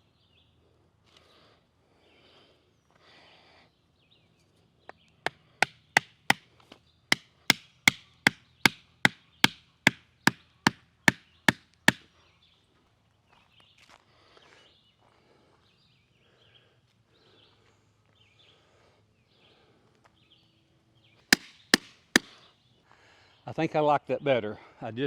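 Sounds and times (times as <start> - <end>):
hammer striking wooden stake: 5.3 - 6.4, 7.1 - 12.0, 21.3 - 22.3.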